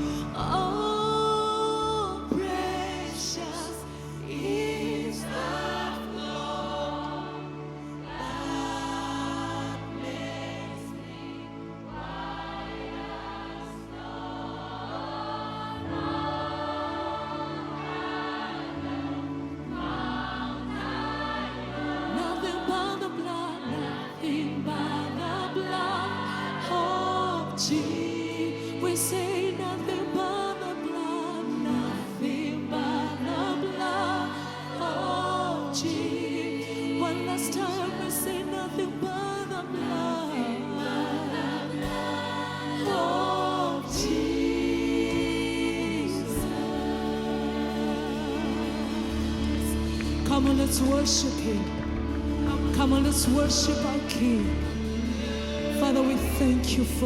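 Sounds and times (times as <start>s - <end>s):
gospel choir singing: 0.0s - 57.0s
keyboard: 0.0s - 57.0s
bass notes: 44.0s - 57.0s.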